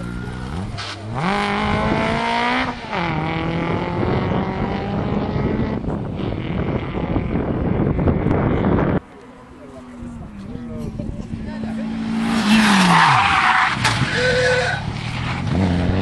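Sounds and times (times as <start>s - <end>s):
tyre and road noise: 0.0s - 16.0s
car engine revving hard: 0.6s - 7.4s.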